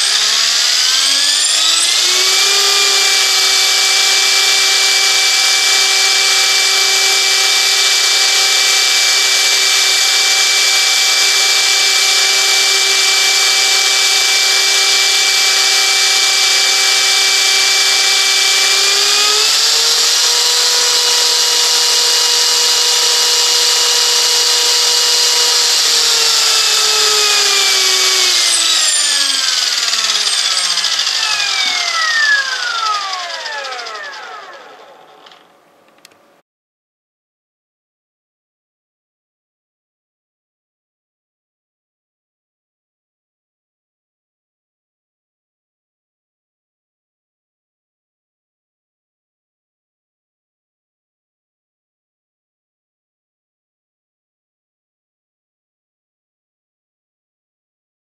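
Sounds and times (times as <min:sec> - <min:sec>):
rc helicopter motor whine: 0:00.0 - 0:35.5.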